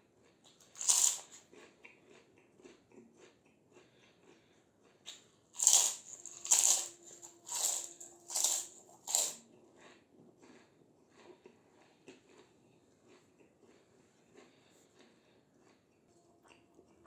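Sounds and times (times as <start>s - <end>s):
chewing: 0.2s - 17.0s
crunching fried snacks: 0.5s - 4.5s, 5.1s - 11.3s.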